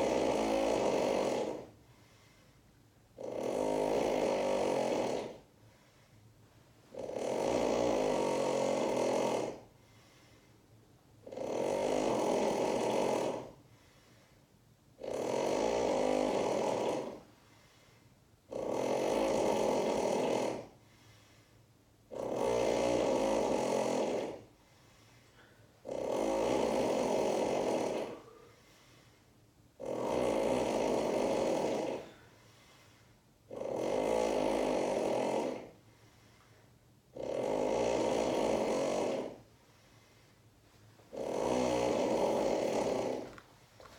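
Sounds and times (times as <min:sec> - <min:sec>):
person snoring: 0:00.0 - 0:01.8, 0:03.2 - 0:05.5, 0:06.9 - 0:09.7, 0:11.2 - 0:13.6, 0:15.0 - 0:17.3, 0:18.5 - 0:20.8, 0:22.1 - 0:24.5, 0:25.4 - 0:28.8, 0:29.8 - 0:32.8, 0:33.5 - 0:35.8, 0:37.1 - 0:39.5, 0:41.1 - 0:43.4
quiet breaths: 0:00.0 - 0:03.2, 0:04.3 - 0:18.5, 0:19.3 - 0:22.1, 0:22.8 - 0:43.9.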